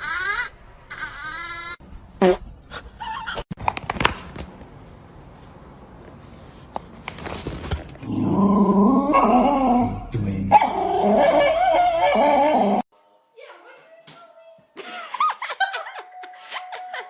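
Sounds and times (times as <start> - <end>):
dog wavering calls: 10.5 - 12.8.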